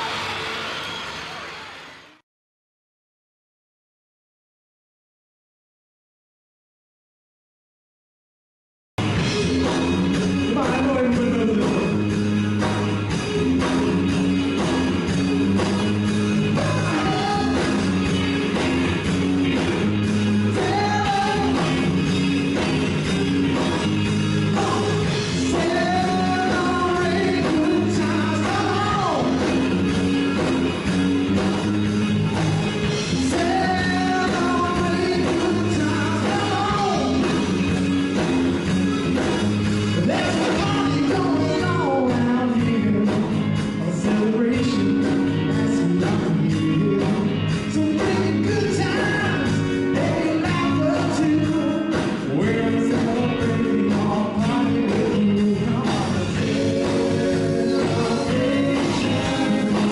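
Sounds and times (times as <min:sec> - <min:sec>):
bass line: 0:09.0 - 0:59.9
person singing: 0:16.5 - 0:18.0, 0:20.5 - 0:21.8, 0:24.5 - 0:29.6, 0:33.2 - 0:37.4, 0:40.0 - 0:59.9.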